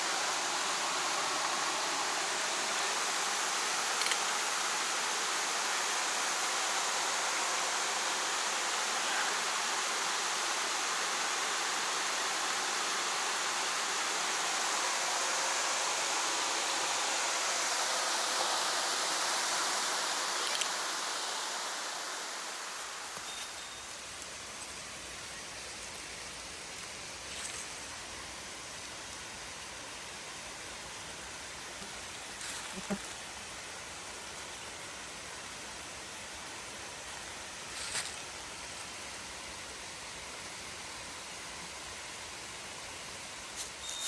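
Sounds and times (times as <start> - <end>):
stream rushing over rocks: 0.0 - 24.6.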